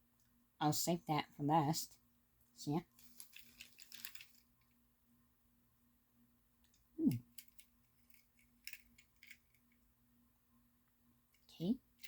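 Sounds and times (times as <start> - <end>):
faint electrical hum: 0.0 - 12.0
toy cars and packaging clicking: 3.0 - 4.8, 6.6 - 9.9.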